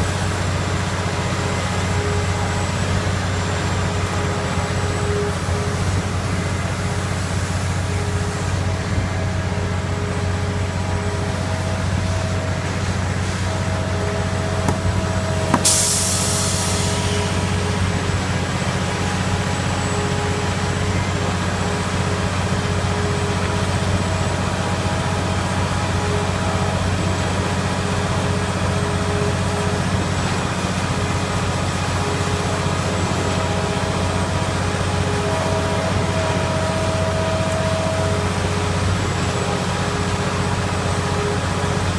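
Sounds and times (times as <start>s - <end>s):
engine whine: 0.0s - 41.9s
heavy diesel engine running: 0.0s - 41.9s
air hissing: 14.6s - 17.6s.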